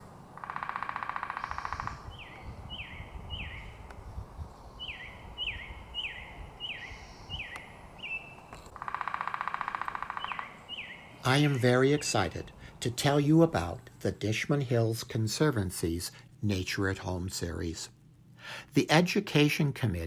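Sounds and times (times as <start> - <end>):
bird trilling: 0.0 - 12.4.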